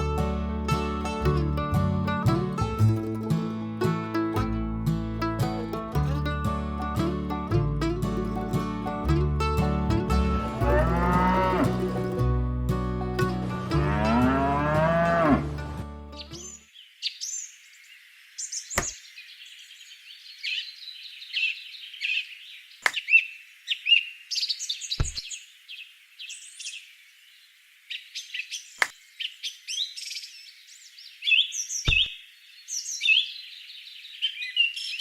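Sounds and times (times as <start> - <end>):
small birds chirping: 16.1 - 35.0.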